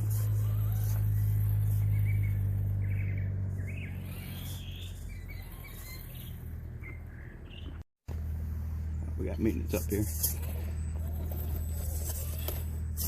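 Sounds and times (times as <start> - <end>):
small birds chirping: 0.0 - 7.9
loud low hum: 0.0 - 13.0.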